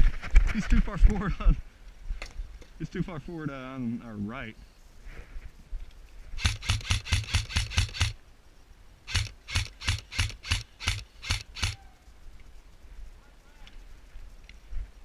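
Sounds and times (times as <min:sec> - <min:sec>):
airsoft gun shots: 0:06.4 - 0:08.2, 0:09.1 - 0:11.8.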